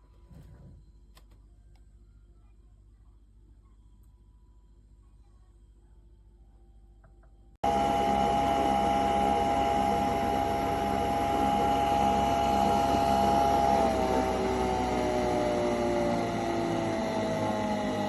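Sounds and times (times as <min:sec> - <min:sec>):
coffee machine motor and pump whirring: 0:07.6 - 0:18.0.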